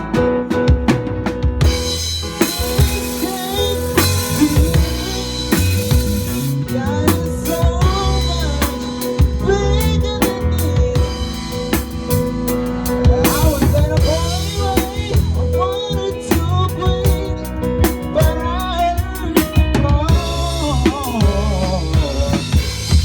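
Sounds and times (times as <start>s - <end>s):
snare and bass drum hits: 0.0s - 6.6s
bass line: 0.0s - 23.0s
bending melodic lead: 1.6s - 23.0s.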